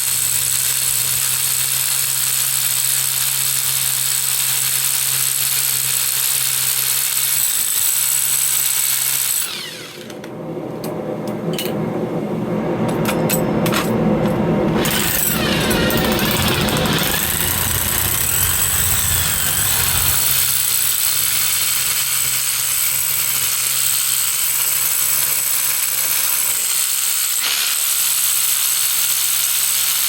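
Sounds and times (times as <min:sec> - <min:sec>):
hammer drill boring into stone: 0:00.1 - 0:10.2, 0:14.8 - 0:29.7.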